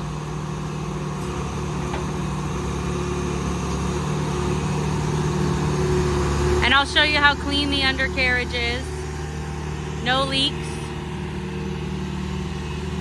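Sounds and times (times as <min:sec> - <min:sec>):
diesel engine idling: 0:00.0 - 0:13.0.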